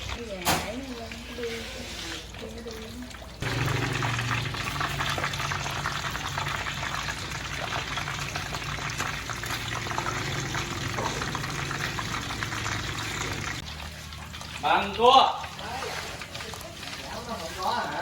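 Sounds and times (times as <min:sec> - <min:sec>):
hot oil sizzling and crackling: 0:00.0 - 0:18.0.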